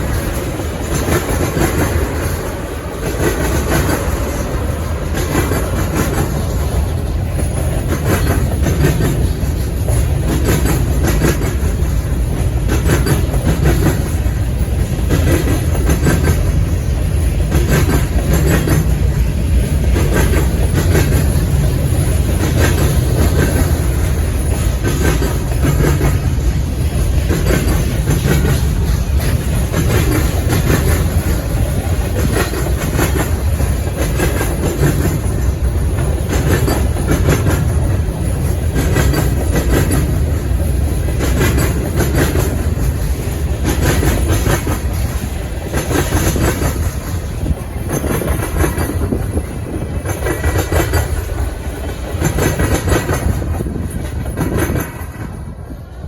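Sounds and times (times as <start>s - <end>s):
freight train rumbling: 0.0s - 56.0s
wheels clacking over rail joints: 0.0s - 56.0s.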